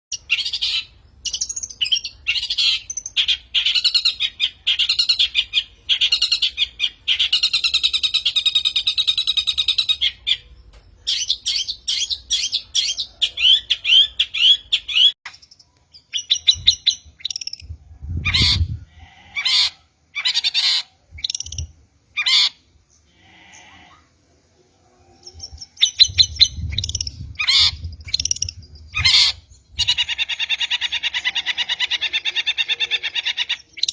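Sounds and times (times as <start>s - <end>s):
shrike harsh chattering calls: 18.2s - 21.5s, 22.1s - 24.0s, 26.8s - 33.9s.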